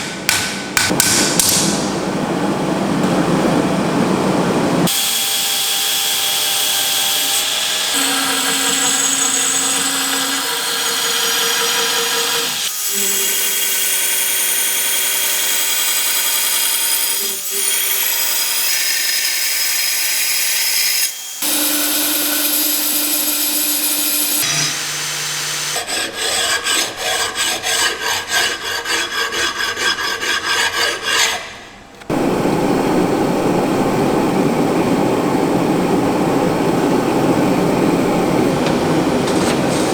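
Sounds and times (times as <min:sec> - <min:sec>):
motor whine with grinding: 0:04.9 - 0:13.3
rhythmic filing strokes: 0:20.5 - 0:31.6.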